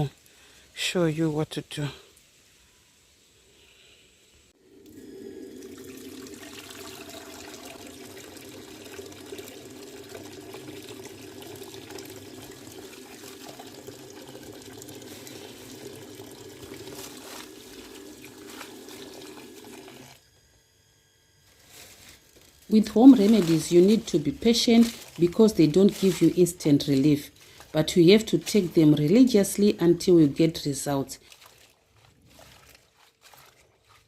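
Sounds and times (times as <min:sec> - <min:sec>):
leaves crackling and splashing: 0:04.8 - 0:20.2, 0:21.4 - 0:34.0
tap water running into sink: 0:04.8 - 0:20.2, 0:23.0 - 0:26.3.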